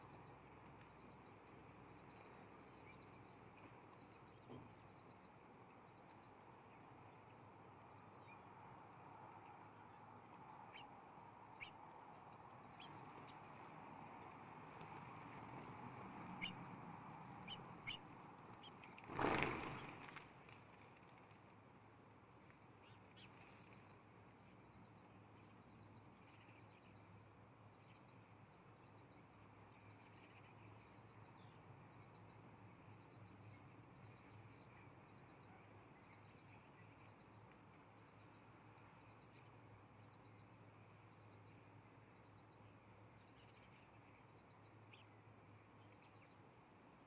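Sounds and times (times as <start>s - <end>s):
small birds chirping: 0.0s - 47.0s
birds chirping: 9.4s - 20.9s.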